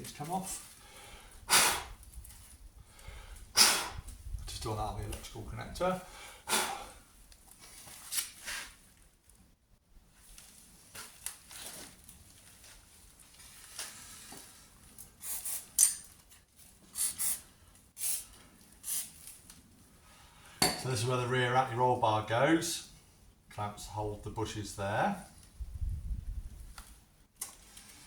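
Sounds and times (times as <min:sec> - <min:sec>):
metallic clinks of tools and parts: 0:15.8 - 0:16.2.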